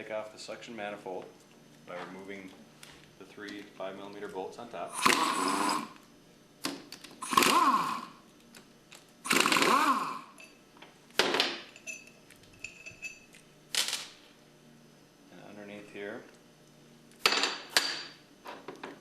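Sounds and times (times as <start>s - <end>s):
cordless power driver whirring: 5.0s - 6.0s, 7.2s - 8.1s, 9.3s - 10.3s.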